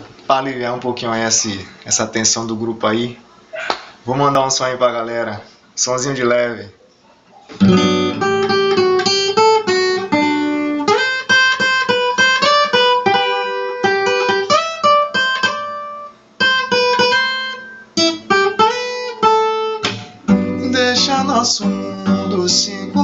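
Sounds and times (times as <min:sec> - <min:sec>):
acoustic guitar picking: 0:07.3 - 0:23.0.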